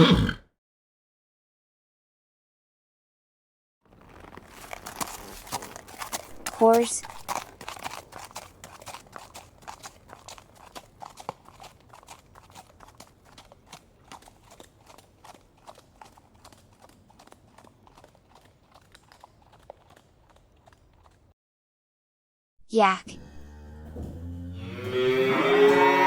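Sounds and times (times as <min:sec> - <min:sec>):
horse hooves clopping: 0:03.9 - 0:21.3.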